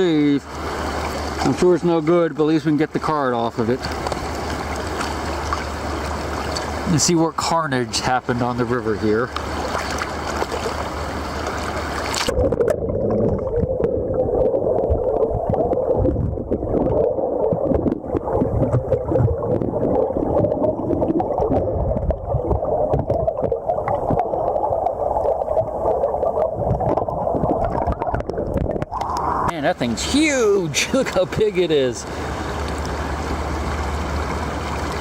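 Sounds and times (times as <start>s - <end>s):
underwater river rushing: 0.0s - 35.0s
small underwater crackles: 3.5s - 6.9s, 9.1s - 29.5s.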